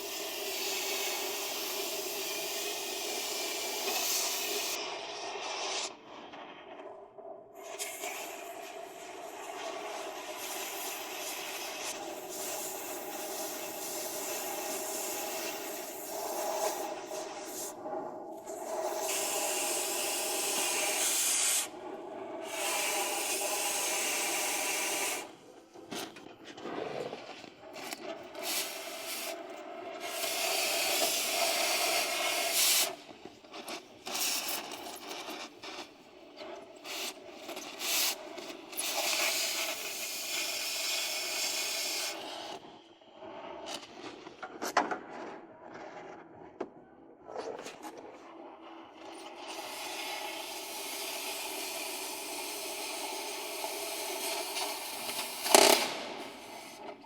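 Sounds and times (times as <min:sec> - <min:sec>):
hissing rasping tool: 0:07.7 - 0:17.8, 0:18.4 - 0:21.8, 0:22.4 - 0:25.4, 0:30.0 - 0:33.0, 0:49.4 - 0:57.0.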